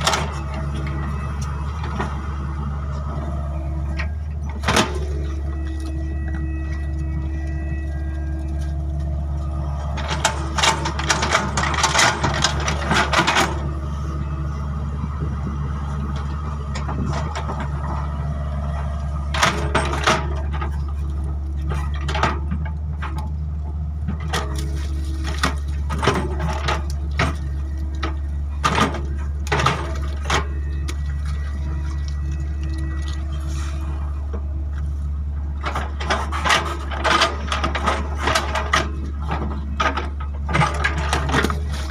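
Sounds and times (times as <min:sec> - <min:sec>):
excavator diesel engine: 0:00.0 - 0:41.9
clanking and cracking: 0:03.9 - 0:13.7, 0:19.3 - 0:41.9.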